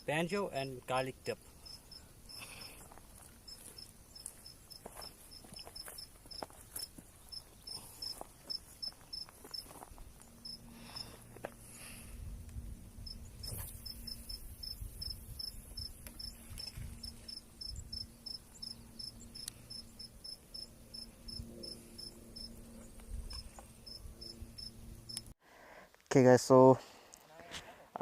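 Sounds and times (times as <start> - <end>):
cricket chirping: 1.3 - 11.1, 13.0 - 25.3.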